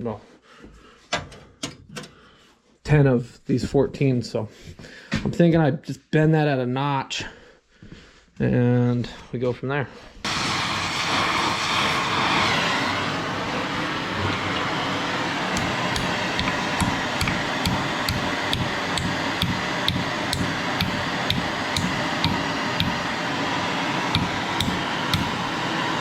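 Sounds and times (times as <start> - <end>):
gas torch flame hissing: 10.2 - 26.0.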